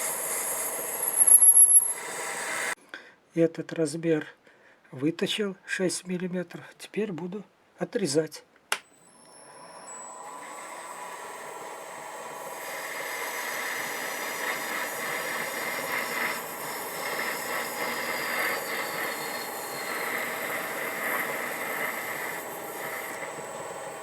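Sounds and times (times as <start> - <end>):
high-pitched metal cutting: 0.0 - 2.8, 9.3 - 24.0
lathe humming: 0.0 - 2.8, 9.2 - 24.0.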